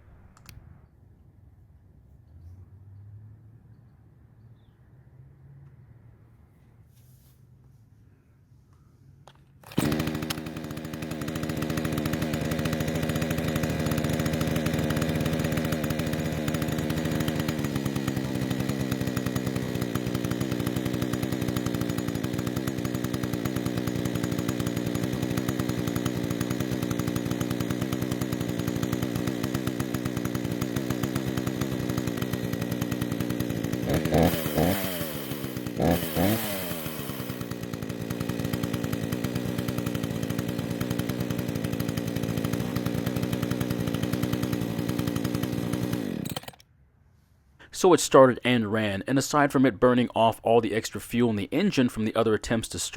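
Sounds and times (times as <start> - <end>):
chainsaw engine running and revving: 9.6 - 46.6.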